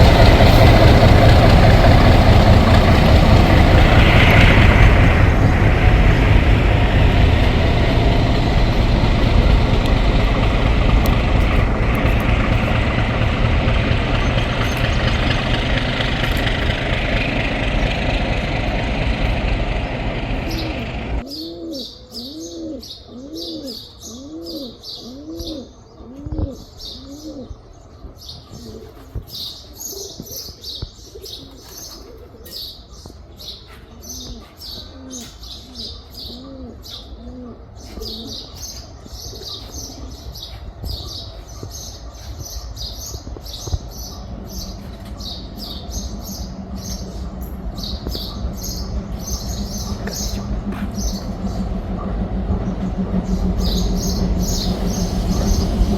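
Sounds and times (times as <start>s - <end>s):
train rumbling on rails: 0.0s - 21.5s, 27.5s - 55.9s
small birds chirping: 5.4s - 55.9s
pigeons cooing: 18.7s - 27.7s, 28.5s - 29.3s, 29.9s - 32.9s, 33.5s - 41.6s.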